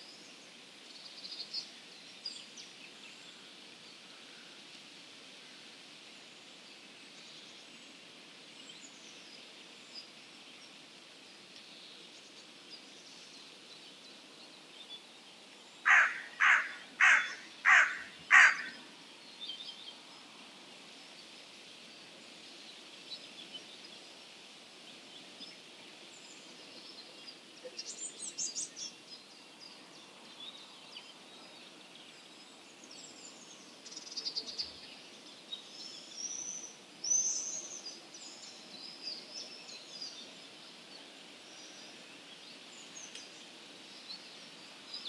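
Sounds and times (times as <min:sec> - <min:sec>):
steady background hiss: 0:00.0 - 0:45.0
small songbirds chirping: 0:06.3 - 0:45.0
crow cawing: 0:15.9 - 0:18.8.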